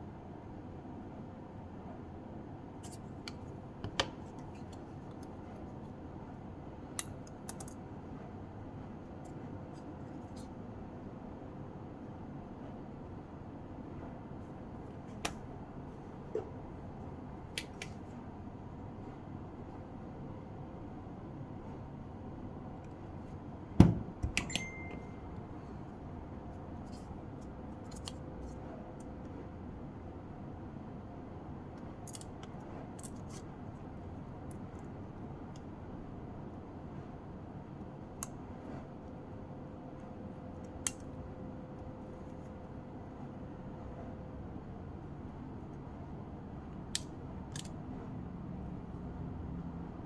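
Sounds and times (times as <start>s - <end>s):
short high beep: 24.5s - 25.2s.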